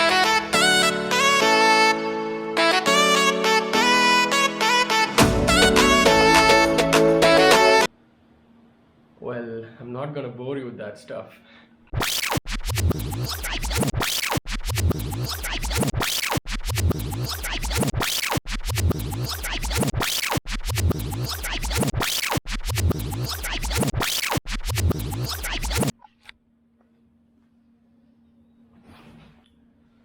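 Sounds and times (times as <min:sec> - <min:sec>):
music with heavy beat: 0:05.2 - 0:07.8, 0:12.0 - 0:25.9
record scratching: 0:11.9 - 0:25.9.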